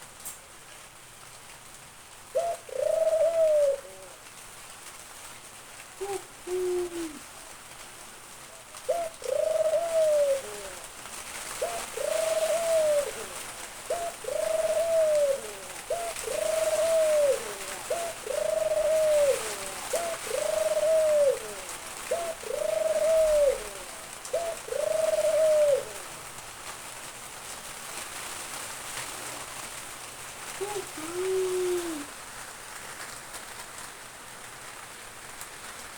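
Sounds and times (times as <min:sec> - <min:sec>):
dove cooing: 0:02.3 - 0:04.3, 0:06.0 - 0:07.5, 0:08.8 - 0:26.3, 0:30.5 - 0:32.2.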